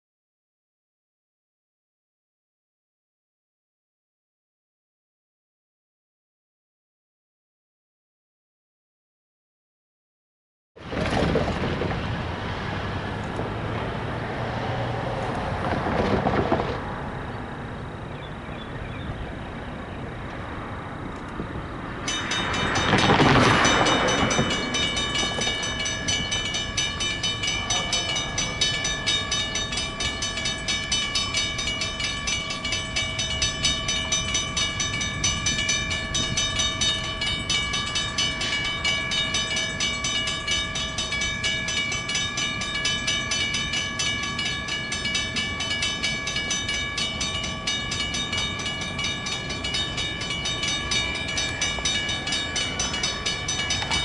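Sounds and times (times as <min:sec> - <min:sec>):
loud rushing noise: 0:21.4 - 0:26.2
crossing warning bell ringing: 0:21.8 - 0:54.0.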